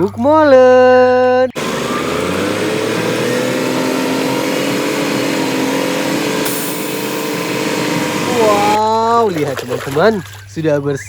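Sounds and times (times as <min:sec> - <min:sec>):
pump motor humming: 0:01.6 - 0:08.8
water spraying: 0:01.6 - 0:08.8.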